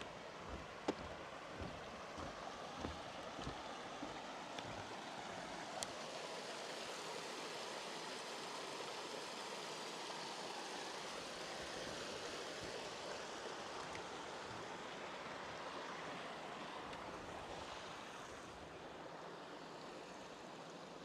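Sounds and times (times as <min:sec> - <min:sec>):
soft footsteps on trail: 0:00.0 - 0:05.1
stream water flowing: 0:00.0 - 0:21.0.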